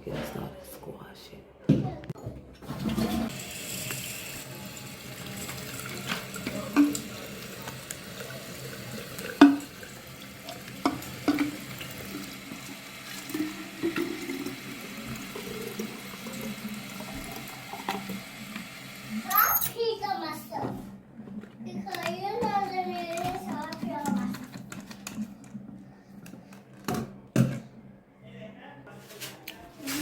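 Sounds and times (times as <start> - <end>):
tap water running into bottle: 2.8 - 19.7.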